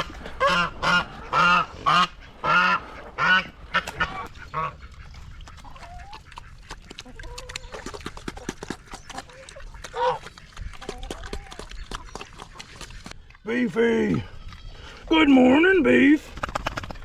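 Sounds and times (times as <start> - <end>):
waterfowl calling: 0.0 - 8.0.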